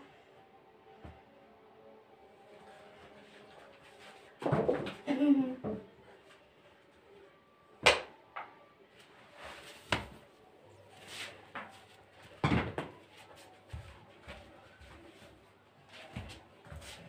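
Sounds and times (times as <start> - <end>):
handling and shuffling noise: 2.5 - 5.3, 8.9 - 17.0.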